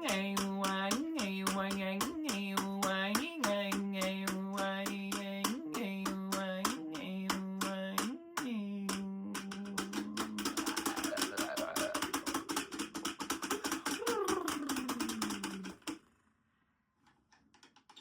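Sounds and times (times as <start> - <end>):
woman singing wordless held tones: 0.0 - 12.1
hands tapping a shruti box: 0.0 - 16.0.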